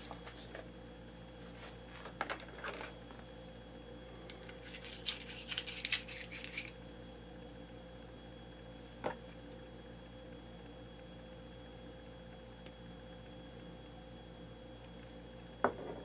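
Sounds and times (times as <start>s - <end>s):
small metal parts clinking: 4.4s - 6.7s.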